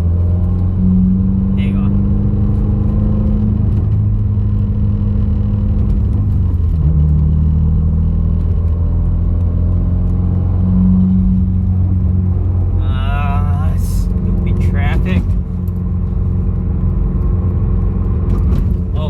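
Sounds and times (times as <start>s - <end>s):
car engine driving: 0.0s - 19.0s
road noise: 0.0s - 19.0s.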